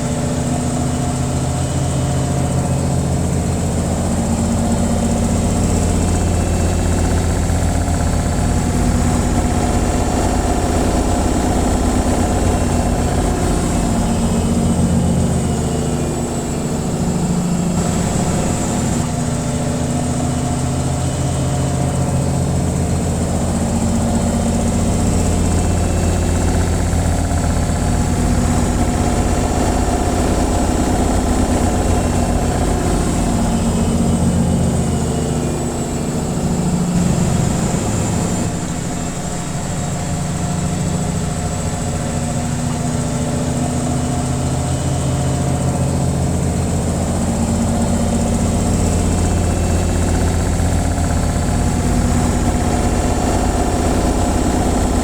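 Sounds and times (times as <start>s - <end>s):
washing machine spinning: 0.0s - 55.0s.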